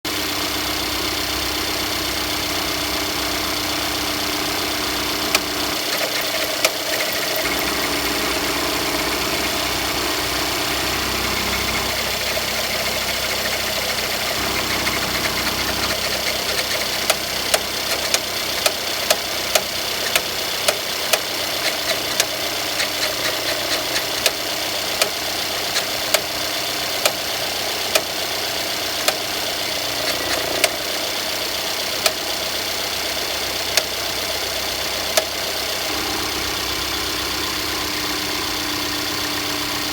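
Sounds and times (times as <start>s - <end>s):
car engine running: 0.1s - 39.9s
sharp irregular clicks: 5.3s - 8.2s, 12.0s - 24.4s, 25.0s - 26.4s, 27.9s - 28.1s, 29.0s - 29.2s, 30.0s - 30.8s, 33.7s - 34.0s, 35.1s - 35.4s.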